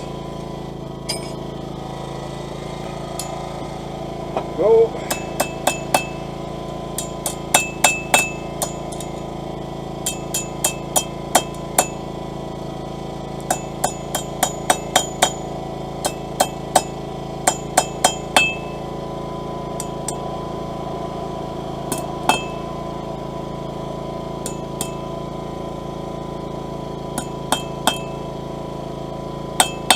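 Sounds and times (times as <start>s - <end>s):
steady hum: 0.0s - 29.9s
hammer striking steel on anvil: 1.1s - 1.4s, 4.4s - 6.2s, 7.0s - 9.2s, 10.0s - 12.0s, 13.5s - 15.4s, 16.0s - 16.9s, 17.5s - 18.8s, 19.8s - 20.2s, 21.9s - 22.8s, 24.4s - 25.1s, 27.2s - 28.2s, 29.6s - 29.9s.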